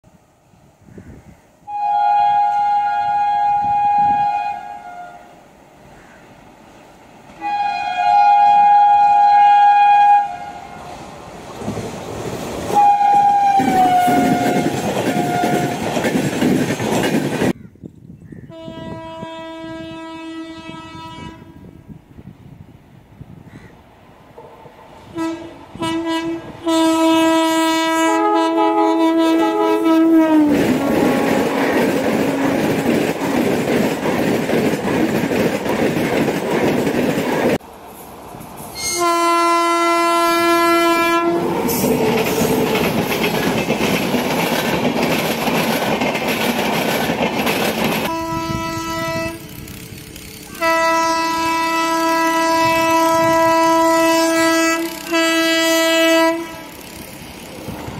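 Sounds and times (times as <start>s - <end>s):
train passing at speed: 0.0s - 17.6s, 18.5s - 57.9s
locomotive air horn: 1.7s - 5.4s, 7.4s - 11.0s, 12.7s - 15.9s, 18.5s - 21.8s, 25.1s - 32.7s, 38.8s - 42.9s, 48.0s - 49.7s, 50.4s - 57.0s.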